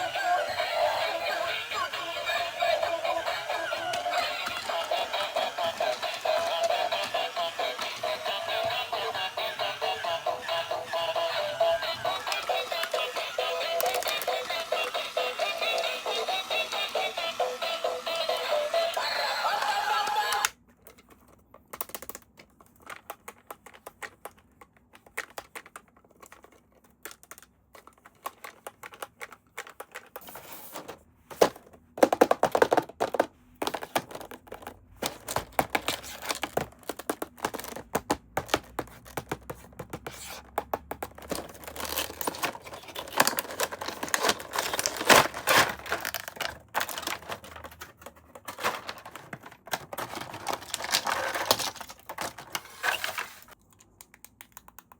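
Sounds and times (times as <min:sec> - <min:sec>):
packaging clicks and taps: 0:00.2 - 0:30.3, 0:32.0 - 0:52.6
plastic crinkling: 0:11.3 - 0:16.7, 0:41.2 - 0:53.6
packaging tearing: 0:41.6 - 0:47.3, 0:50.0 - 0:53.6.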